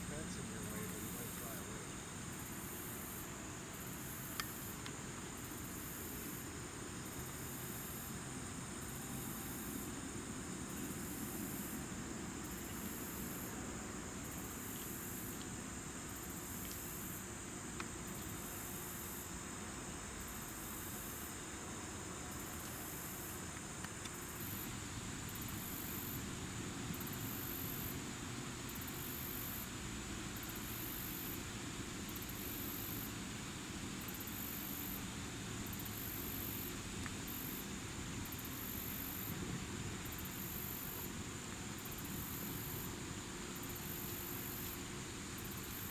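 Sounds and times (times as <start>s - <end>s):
high insect hum: 0.0s - 45.9s
insects pulsing chirps: 0.0s - 45.9s.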